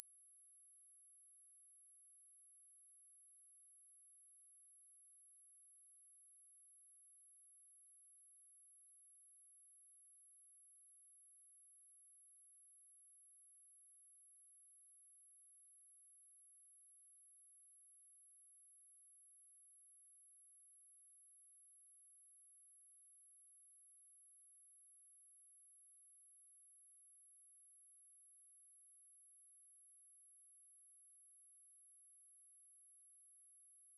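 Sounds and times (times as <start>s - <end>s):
high-pitched sine test tone: 21.0s - 33.9s.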